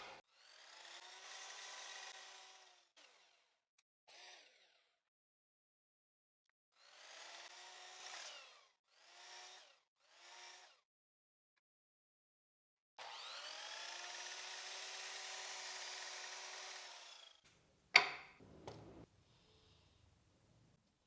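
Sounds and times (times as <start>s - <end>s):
electric power tool motor: 13.0s - 17.4s.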